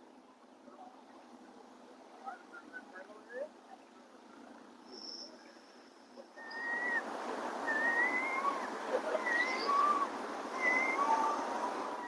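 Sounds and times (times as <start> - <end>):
rushing noise of surf or wind: 6.5 - 12.0
birds calling: 7.7 - 12.0.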